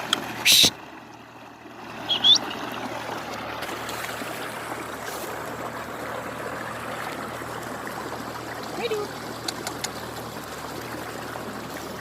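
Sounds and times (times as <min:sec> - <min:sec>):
parrot chirp: 0:02.1 - 0:02.5.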